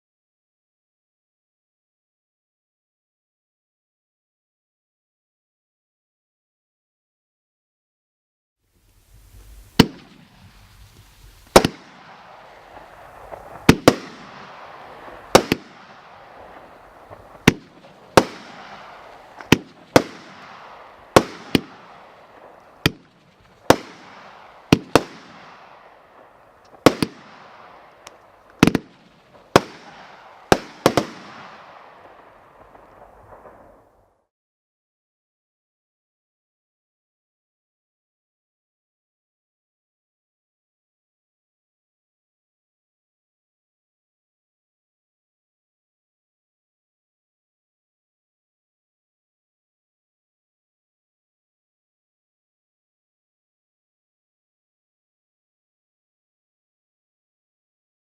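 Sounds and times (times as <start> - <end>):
fireworks hissing: 8.8 - 25.2
firework bangs: 9.1 - 33.9.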